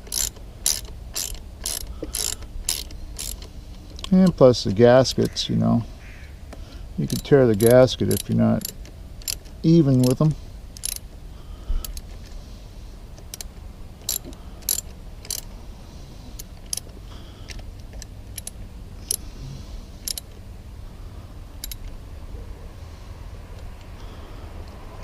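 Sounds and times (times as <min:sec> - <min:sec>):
ratchet wrench clicking: 0:00.0 - 0:04.4, 0:07.0 - 0:11.1, 0:13.2 - 0:15.5, 0:16.4 - 0:19.3, 0:20.0 - 0:20.4, 0:21.6 - 0:22.0
low steady rumble: 0:00.0 - 0:25.0.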